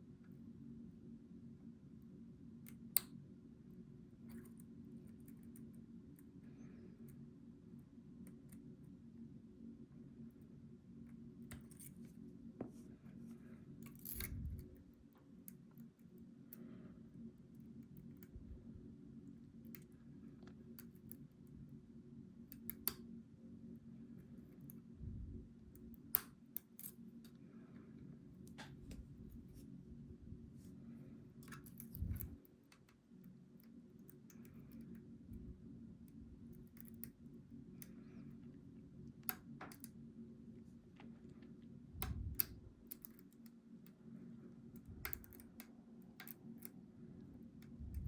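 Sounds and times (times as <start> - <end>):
steady low hum: 0.0 - 48.0
lock picks clicking: 13.8 - 14.4, 31.4 - 32.4, 44.8 - 46.7.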